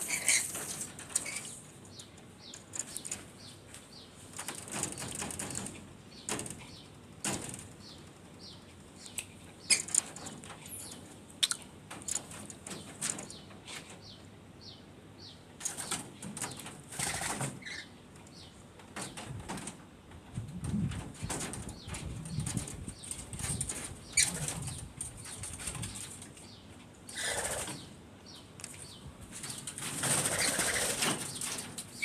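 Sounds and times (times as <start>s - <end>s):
rustling and wing flapping: 0.0s - 14.0s, 15.6s - 17.8s, 18.7s - 27.9s, 28.7s - 32.0s.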